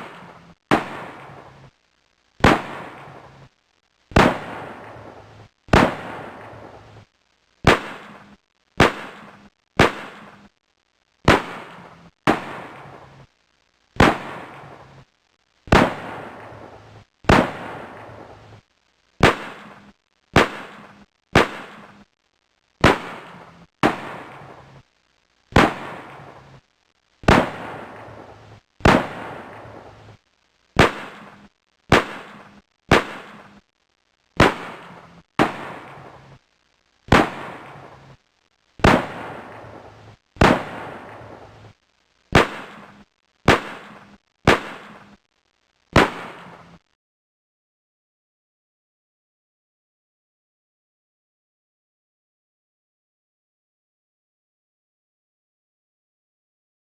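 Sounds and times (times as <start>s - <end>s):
gunshots with reverb: 30.8s - 33.6s, 37.1s - 37.8s, 42.4s - 45.1s, 46.0s - 46.6s.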